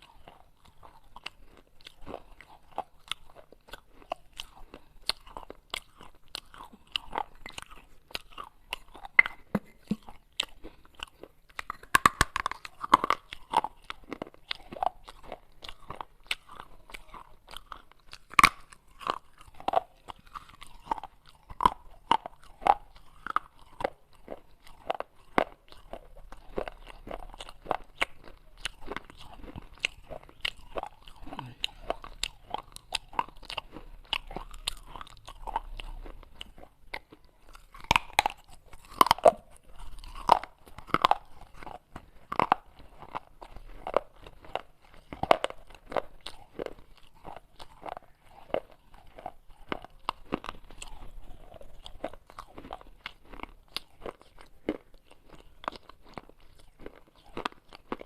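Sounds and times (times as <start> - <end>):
crunchy chewing close up: 0.0 - 58.0.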